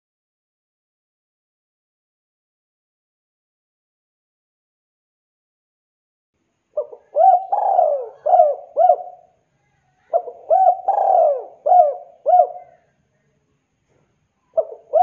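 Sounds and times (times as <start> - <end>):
dove cooing: 6.8 - 9.3, 10.0 - 12.9, 14.5 - 15.0.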